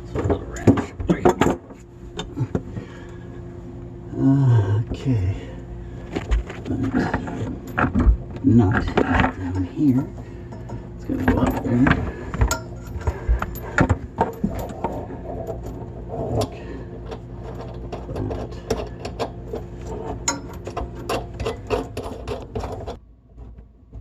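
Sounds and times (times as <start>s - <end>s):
wrench clinking on metal fittings: 20.2s - 22.7s.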